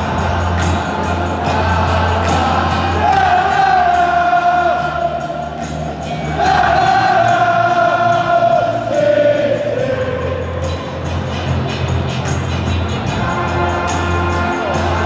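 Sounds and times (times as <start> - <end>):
choir singing long notes: 0.0 - 11.6.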